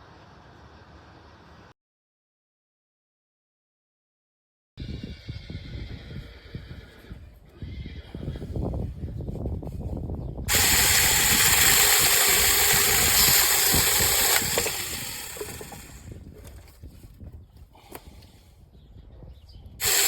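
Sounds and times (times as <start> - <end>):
electric mini chainsaw running: 10.5 - 16.1, 19.8 - 20.0.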